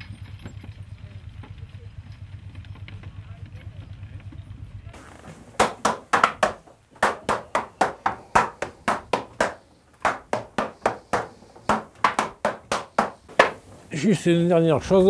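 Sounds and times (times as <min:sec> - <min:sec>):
sharp ringing knocks: 0:05.6 - 0:13.7.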